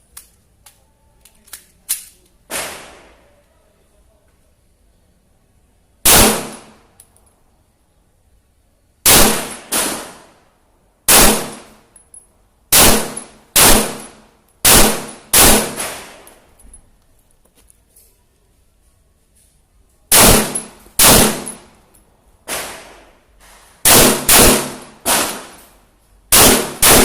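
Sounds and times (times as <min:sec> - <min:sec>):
pistol shots: 0:02.5 - 0:03.1, 0:06.1 - 0:06.8, 0:09.1 - 0:10.3, 0:11.1 - 0:11.8, 0:12.7 - 0:16.2, 0:20.1 - 0:21.7, 0:23.8 - 0:25.6, 0:26.3 - 0:27.0.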